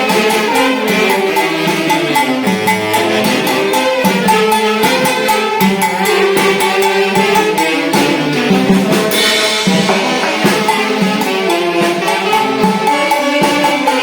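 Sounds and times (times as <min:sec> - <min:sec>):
drum and percussion beats: 0:00.0 - 0:14.0
wind instruments melody: 0:00.0 - 0:14.0
cymbal crash: 0:08.9 - 0:12.9.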